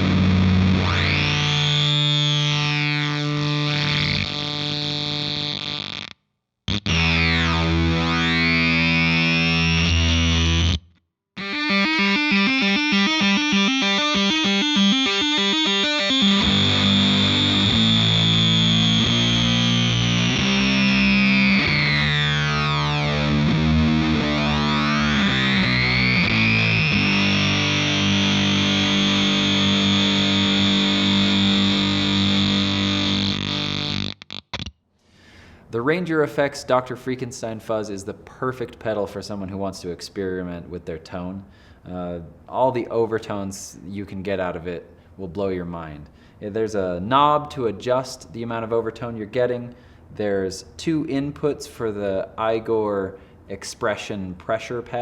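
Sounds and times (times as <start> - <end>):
fuzzed electric guitar chords: 0.0 - 34.8.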